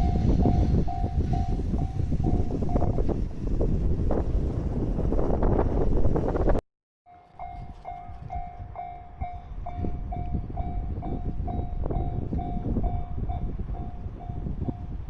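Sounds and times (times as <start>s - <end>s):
level-crossing warning bell: 0.0s - 3.1s, 7.1s - 15.0s
train rumble: 0.0s - 6.6s, 7.2s - 15.0s.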